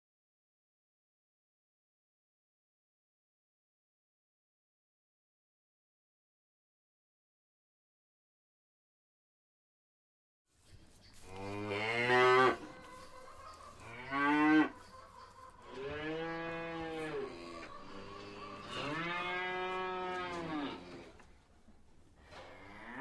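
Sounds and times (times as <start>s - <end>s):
cattle mooing: 11.3s - 12.8s, 13.8s - 14.8s, 15.7s - 21.2s, 22.4s - 23.0s.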